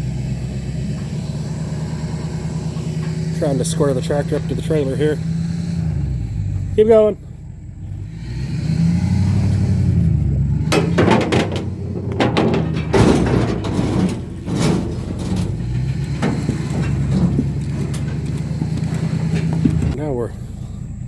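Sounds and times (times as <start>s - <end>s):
engine running: 0.0s - 21.0s
metal clanks and knocks: 0.2s - 5.7s, 9.2s - 20.0s.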